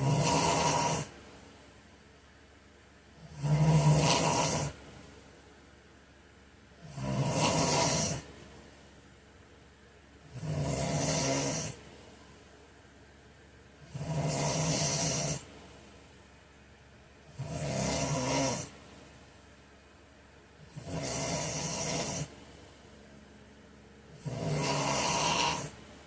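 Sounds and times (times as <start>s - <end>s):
man snoring: 0.0s - 1.1s, 3.2s - 4.8s, 6.8s - 8.3s, 10.3s - 11.8s, 13.8s - 15.5s, 17.3s - 18.7s, 20.7s - 22.3s, 24.1s - 25.8s.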